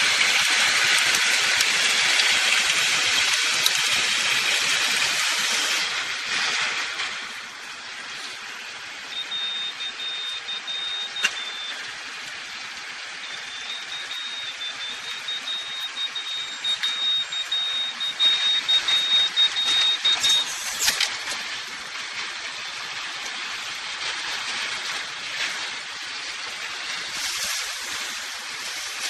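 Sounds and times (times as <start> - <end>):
machinery hiss: 0.0 - 29.0
high warning tone: 9.0 - 21.4.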